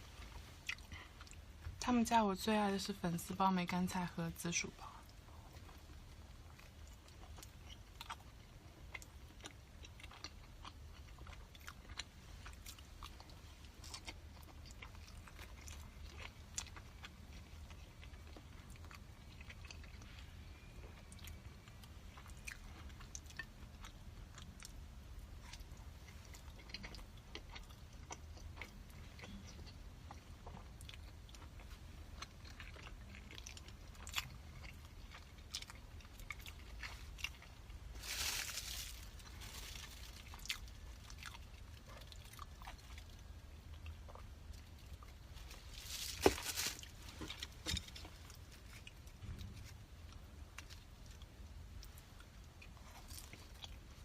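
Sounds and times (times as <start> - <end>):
person chewing food: 0.1 - 1.8, 5.0 - 54.0.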